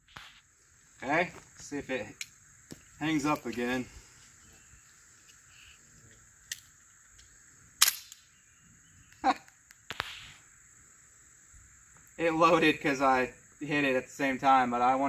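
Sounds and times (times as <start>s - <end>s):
pistol slide snapping forward: 7.8s - 8.2s.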